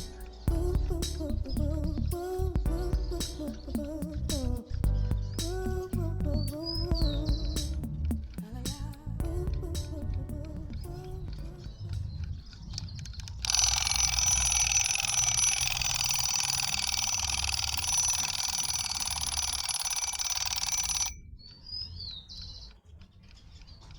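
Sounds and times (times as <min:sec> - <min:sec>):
alarm clock bell ringing: 0:13.4 - 0:21.2
alarm clock clicks: 0:13.4 - 0:21.2.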